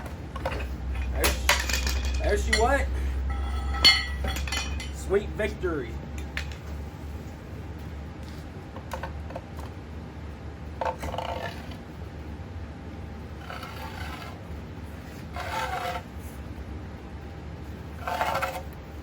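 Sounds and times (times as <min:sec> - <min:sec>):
metal parts scraping: 0:00.0 - 0:05.2
steady low hum: 0:00.0 - 0:19.0.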